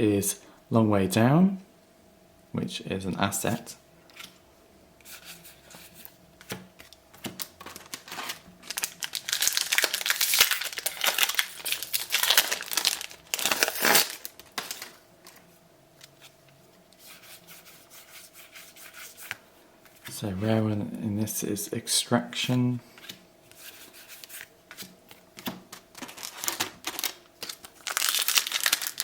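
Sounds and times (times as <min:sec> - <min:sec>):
card pack wrapper tearing and crinkling: 0:07.3 - 0:15.4, 0:25.7 - 0:29.0.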